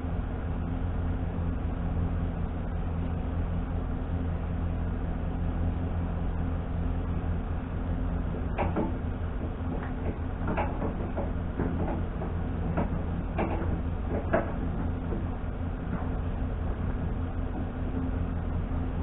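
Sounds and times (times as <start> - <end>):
engine humming: 0.0 - 19.0
knocks and clunks: 8.3 - 17.0.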